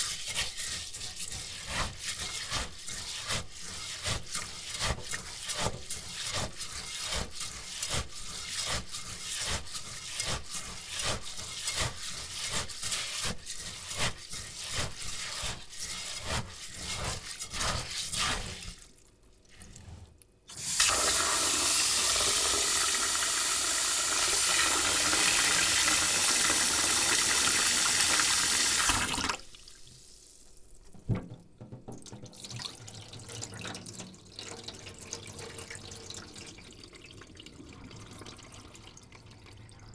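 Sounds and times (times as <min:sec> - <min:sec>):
rice scrubbing and swishing: 0:00.0 - 0:18.9
soft stirring: 0:00.0 - 0:20.3
tap running into bowl: 0:30.9 - 0:34.8.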